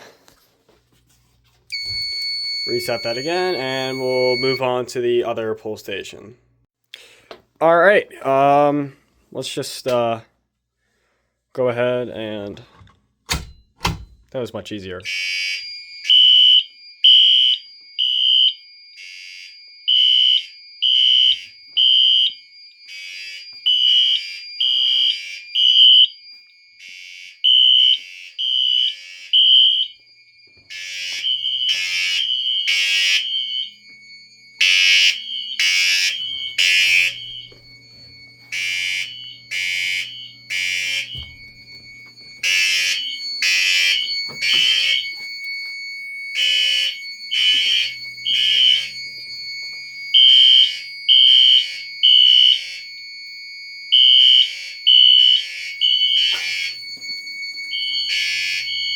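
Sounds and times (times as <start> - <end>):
fire alarm horns beeping: 1.7 - 5.2, 15.0 - 58.9
harsh pulsing alarm horn: 1.8 - 4.8, 30.7 - 45.2, 46.2 - 53.1, 53.8 - 58.9.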